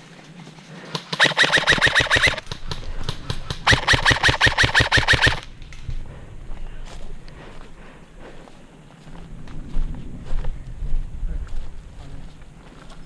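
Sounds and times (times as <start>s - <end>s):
airsoft rifle full-auto bursts: 1.0s - 2.5s, 3.5s - 5.4s.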